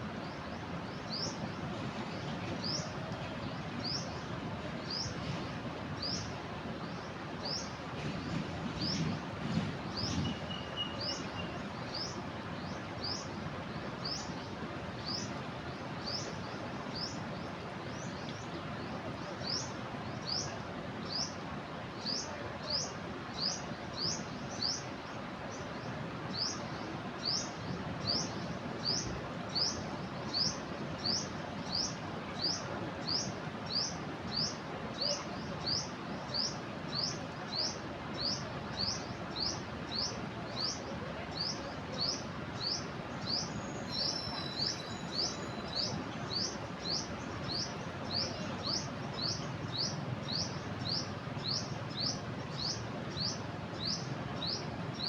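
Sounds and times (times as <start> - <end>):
rushing floodwater: 0.0 - 55.0
bird trill: 43.3 - 47.0.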